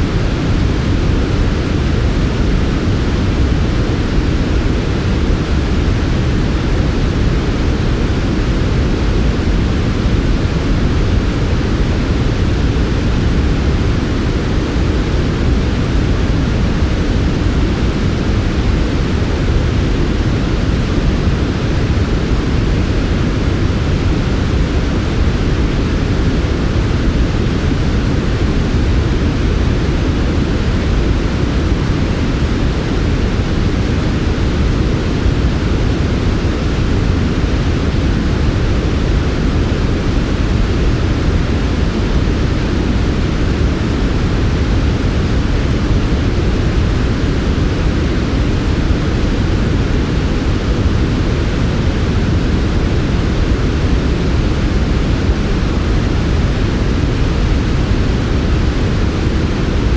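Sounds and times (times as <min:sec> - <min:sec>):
steady low hiss noise: 0:00.0 - 0:59.9.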